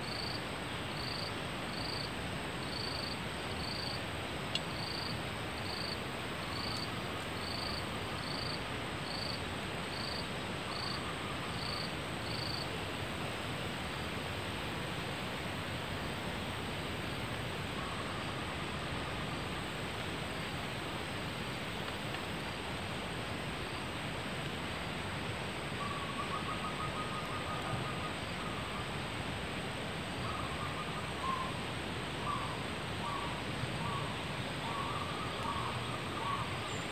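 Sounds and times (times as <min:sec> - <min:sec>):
insect chirping: 0:00.0 - 0:04.0, 0:04.7 - 0:12.7, 0:25.8 - 0:29.0, 0:30.2 - 0:36.9
steady hiss: 0:00.0 - 0:36.9.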